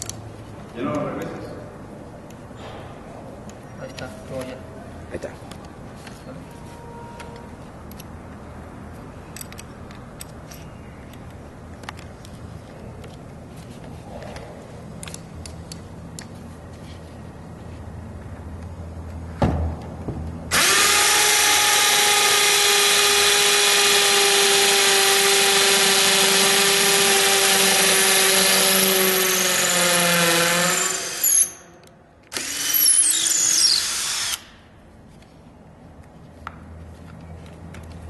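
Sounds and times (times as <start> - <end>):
cordless hammer drill running: 20.5 - 31.6, 32.3 - 34.5.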